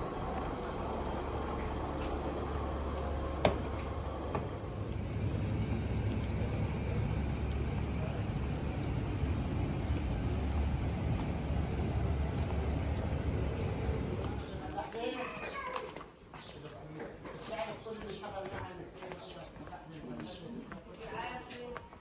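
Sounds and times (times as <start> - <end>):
vehicle engine rumbling: 0.0 - 14.8.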